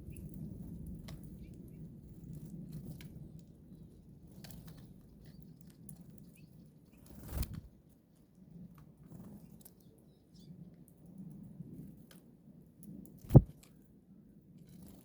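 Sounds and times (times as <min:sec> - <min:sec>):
small birds' wings flapping: 0:06.9 - 0:07.7, 0:13.2 - 0:13.6.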